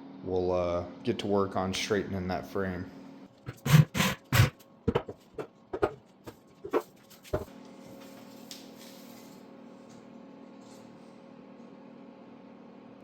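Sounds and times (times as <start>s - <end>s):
steady low hum: 3.2s - 7.9s.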